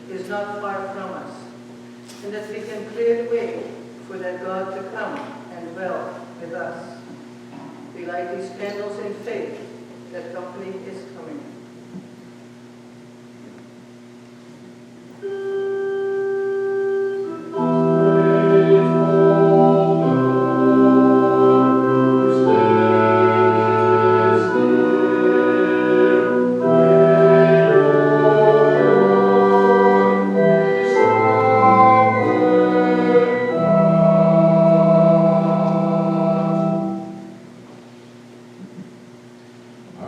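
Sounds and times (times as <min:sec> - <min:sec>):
church organ playing chords: 0:15.1 - 0:37.5.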